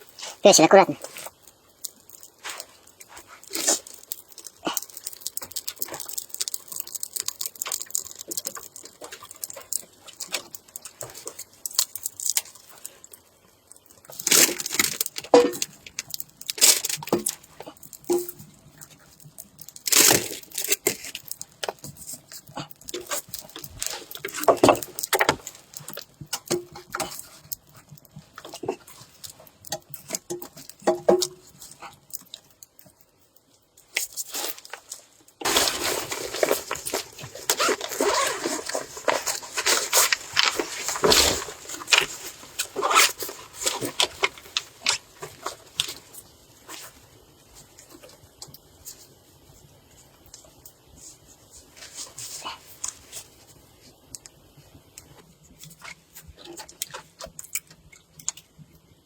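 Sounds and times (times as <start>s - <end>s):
dog chewing and crunching: 1.0s - 33.4s, 35.4s - 46.1s.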